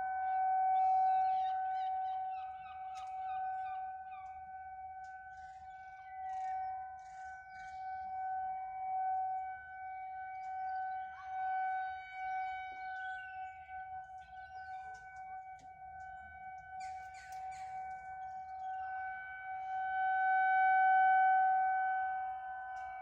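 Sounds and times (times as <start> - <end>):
rotating warning siren steady tone: 0.0 - 23.0.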